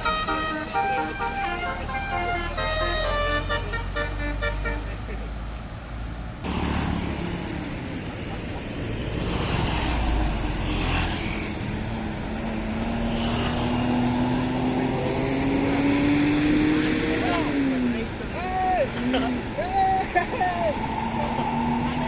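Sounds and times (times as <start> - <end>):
bus engine pulling away: 0.0 - 22.0.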